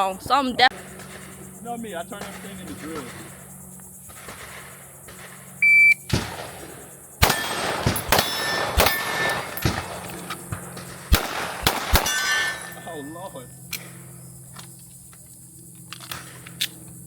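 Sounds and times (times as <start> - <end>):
pistol shots: 4.1 - 13.0
shot timer beep: 5.6 - 6.1
bullets ringing on steel targets: 7.2 - 10.2, 11.2 - 13.4.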